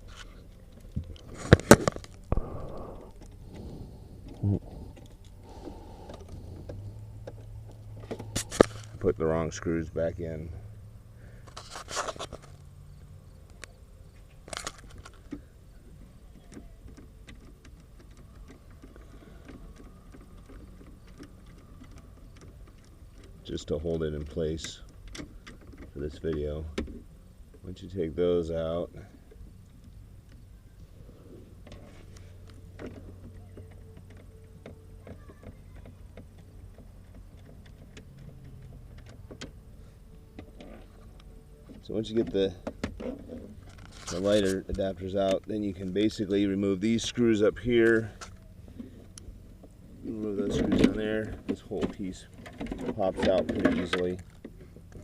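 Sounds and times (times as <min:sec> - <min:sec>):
low steady hum: 0:00.0 - 0:55.0
scrape or rustle: 0:11.4 - 0:12.6, 0:43.4 - 0:44.6.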